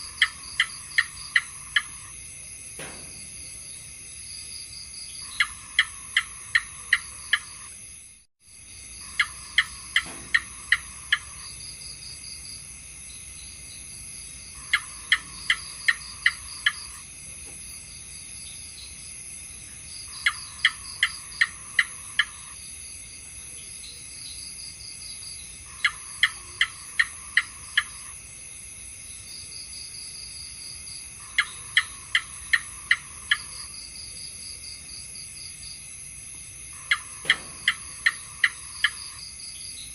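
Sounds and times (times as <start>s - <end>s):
gecko chirping: 0.0s - 2.1s, 5.1s - 7.8s, 9.0s - 11.9s, 14.6s - 17.0s, 20.1s - 22.6s, 25.7s - 28.1s, 31.2s - 33.8s, 36.8s - 39.9s.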